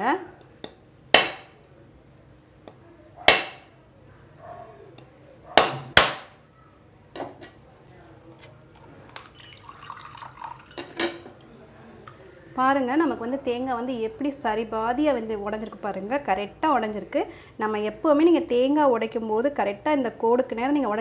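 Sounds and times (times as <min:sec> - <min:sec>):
hard knocks on coconut shell: 0:01.2 - 0:01.6, 0:05.6 - 0:06.3.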